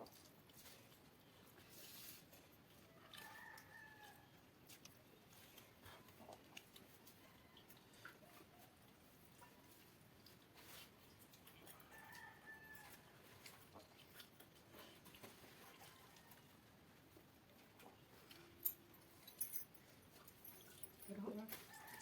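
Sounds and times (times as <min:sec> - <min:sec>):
faint chicken cluck: 0:02.7 - 0:14.2, 0:14.8 - 0:18.1.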